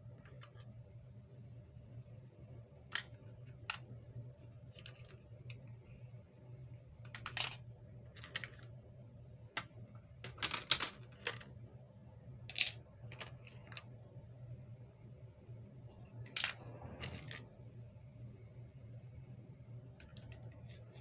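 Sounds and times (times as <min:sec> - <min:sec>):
faint low hum: 0:00.0 - 0:21.0
plastic toys clicking and rustling: 0:00.2 - 0:00.7, 0:02.9 - 0:03.9, 0:04.7 - 0:05.6, 0:07.1 - 0:08.7, 0:09.6 - 0:11.5, 0:12.5 - 0:13.9, 0:16.3 - 0:17.4, 0:20.0 - 0:20.8.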